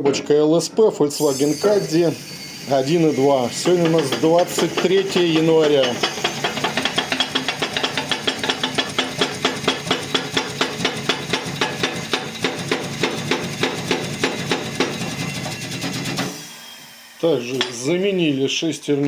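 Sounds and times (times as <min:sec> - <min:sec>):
hammer tapping metal: 0:02.7 - 0:15.2, 0:17.6 - 0:17.9.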